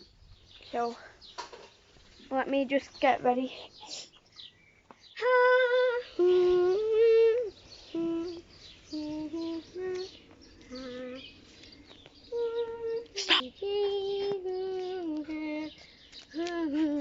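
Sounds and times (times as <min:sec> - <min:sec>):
child humming a slow tune: 0:05.2 - 0:11.4, 0:12.3 - 0:17.0.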